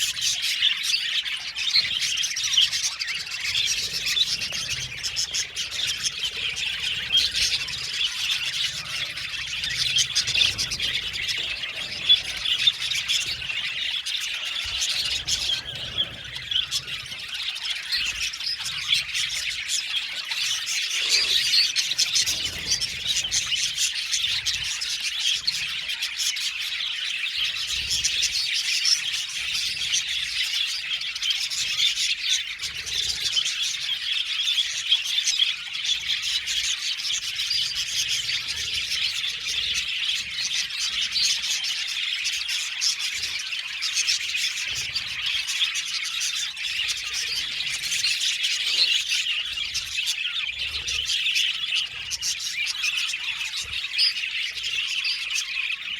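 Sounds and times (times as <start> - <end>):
budgerigars chirping: 0.0 - 55.9.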